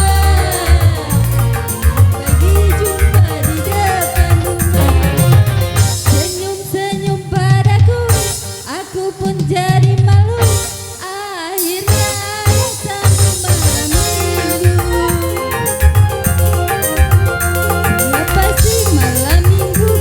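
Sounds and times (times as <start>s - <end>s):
remix dance music with heavy beat: 4.7s - 6.2s.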